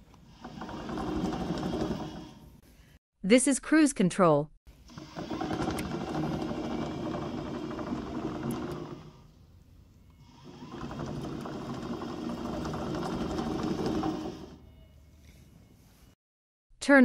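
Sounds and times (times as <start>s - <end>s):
tracked toy vehicle motors running: 0.2s - 2.4s, 4.8s - 9.4s, 10.2s - 14.6s.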